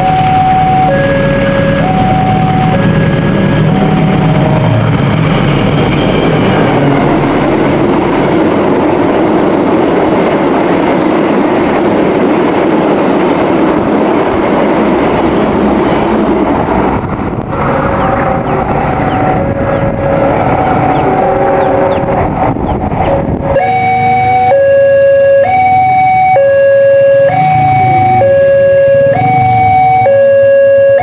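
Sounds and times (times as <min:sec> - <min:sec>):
crossing warning signal tones: 0:00.0 - 0:09.1, 0:16.6 - 0:31.0
train wheels rumbling on rail: 0:00.0 - 0:31.0.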